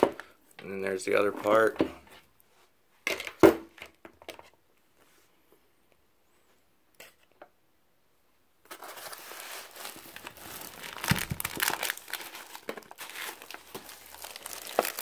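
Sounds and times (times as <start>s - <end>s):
packaging crinkling: 8.7s - 15.0s
packaging snapping: 8.7s - 15.0s.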